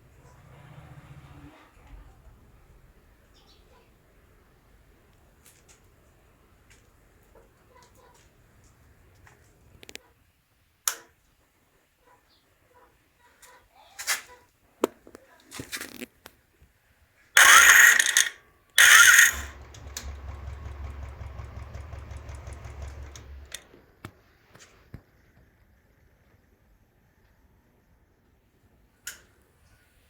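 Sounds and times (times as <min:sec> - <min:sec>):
small clicks: 0:17.4 - 0:20.1
electric starter cranking: 0:17.4 - 0:23.6
motorcycle engine idling: 0:19.5 - 0:23.6.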